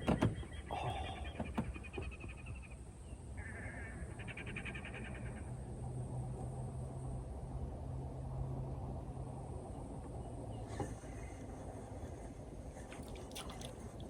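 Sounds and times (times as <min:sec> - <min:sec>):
bird chattering trills: 0:00.5 - 0:01.5.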